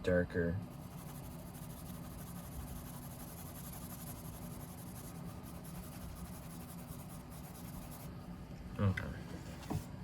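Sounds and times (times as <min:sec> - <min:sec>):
pencil scratching on paper: 0:00.6 - 0:08.1.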